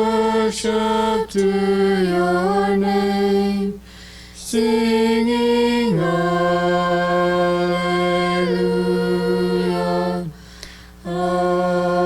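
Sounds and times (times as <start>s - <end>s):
person singing a hymn unaccompanied: 0.0s - 12.0s.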